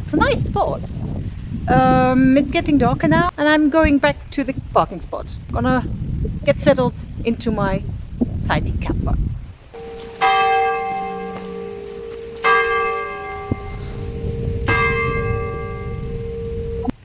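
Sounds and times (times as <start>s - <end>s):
church bell tolling: 9.8s - 16.9s.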